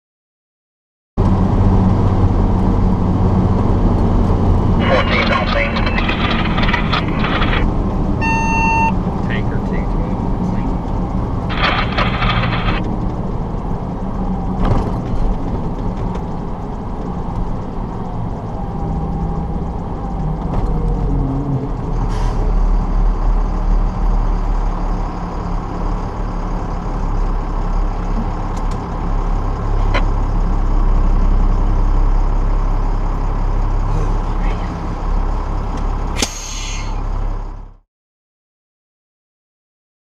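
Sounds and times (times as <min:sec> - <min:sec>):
truck engine running: 0:01.2 - 0:37.8.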